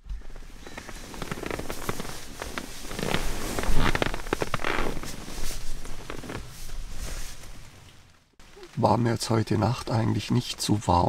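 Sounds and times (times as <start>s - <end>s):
sleeping bag rustling: 0.0s - 8.7s.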